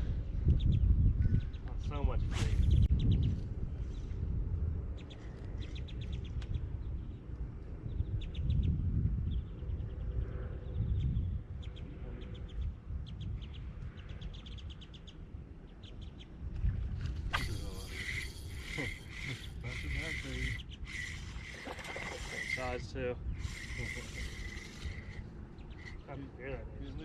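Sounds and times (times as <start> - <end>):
bird chattering trills: 17.3 - 26.4.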